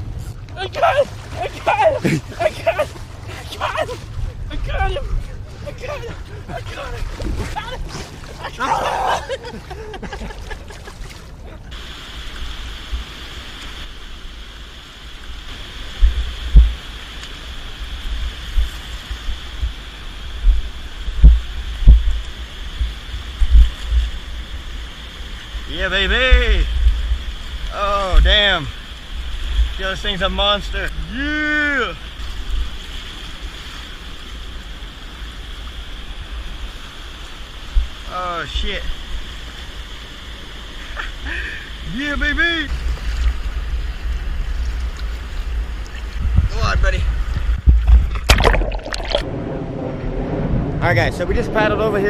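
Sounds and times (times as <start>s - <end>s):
wind on microphone: 0.0s - 8.6s, 15.5s - 28.5s, 42.7s - 52.0s
river water rushing: 0.0s - 26.0s, 47.9s - 49.3s
steady high hiss: 11.7s - 47.4s
dull low thumps: 16.0s - 16.8s, 19.3s - 24.1s, 45.6s - 51.6s.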